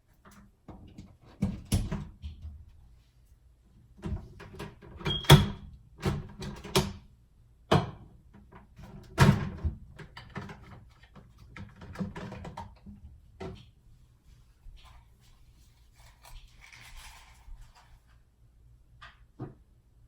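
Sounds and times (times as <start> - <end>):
kitchen items knocking and clattering: 8.8 - 13.8.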